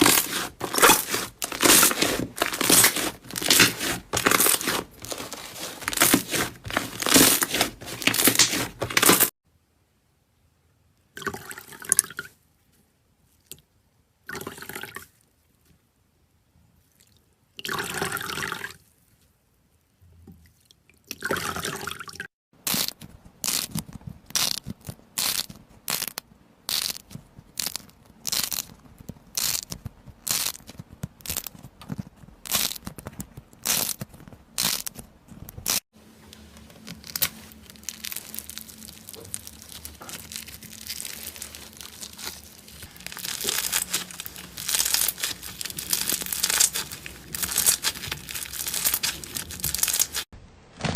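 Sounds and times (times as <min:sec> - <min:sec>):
crunchy slime pokes: 0:00.0 - 0:09.3
slime crackling and crinkling: 0:00.0 - 0:09.4, 0:22.6 - 0:35.8, 0:36.4 - 0:50.9.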